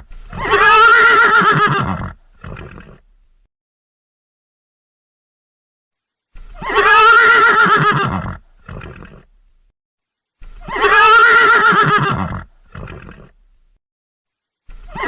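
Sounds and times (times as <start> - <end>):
pony whinnying: 0.3 - 3.1, 6.4 - 9.3, 10.4 - 13.4, 14.7 - 15.0.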